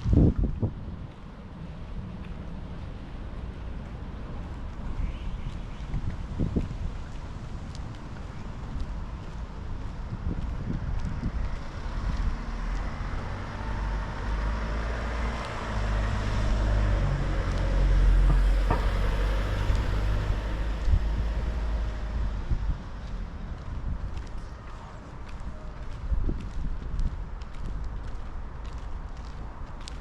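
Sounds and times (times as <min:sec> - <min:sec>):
tyre noise on road: 0:00.0 - 0:30.0
car driving past: 0:11.8 - 0:22.7.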